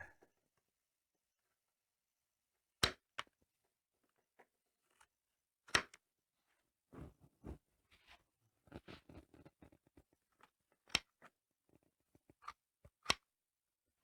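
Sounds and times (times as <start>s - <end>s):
rustling handling noise: 6.9s - 9.8s.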